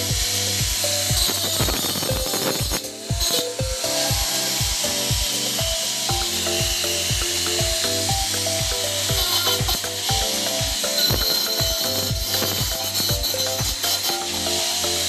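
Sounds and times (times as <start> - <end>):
electronic music with kick drum: 0.0 - 15.0.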